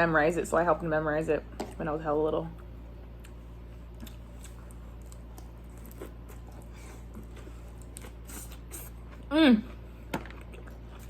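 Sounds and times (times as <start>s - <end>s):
steady low hum: 0.0s - 11.0s
chewing with wet mouth clicks: 2.6s - 9.3s, 10.2s - 11.0s.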